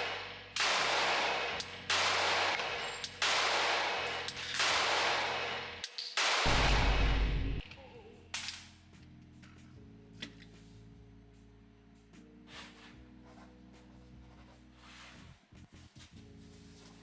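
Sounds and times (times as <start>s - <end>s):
pistol shots with ringing echo: 0.0s - 7.7s
deep rumble: 6.5s - 7.7s.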